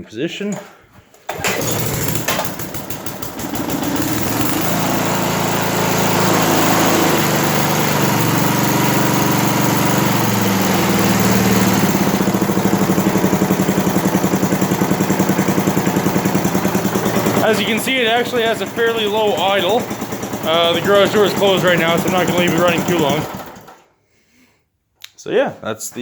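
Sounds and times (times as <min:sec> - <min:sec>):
small engine idling: 0:01.3 - 0:23.9.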